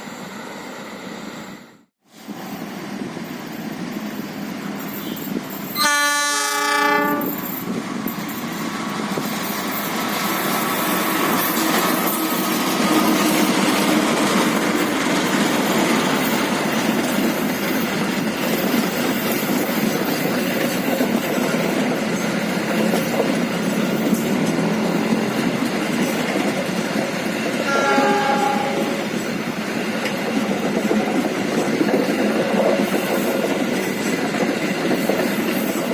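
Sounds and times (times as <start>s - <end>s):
train wheels on rails: 0.0s - 35.9s
locomotive horn: 5.8s - 7.5s, 27.6s - 29.2s.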